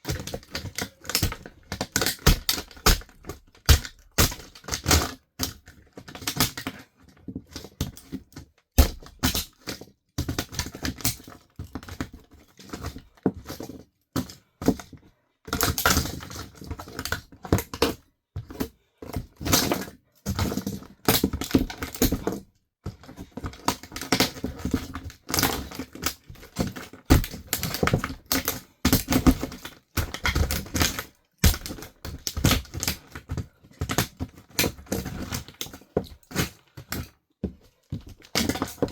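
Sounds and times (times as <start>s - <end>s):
plastic toy car cracking: 0.1s - 6.8s, 23.4s - 37.1s.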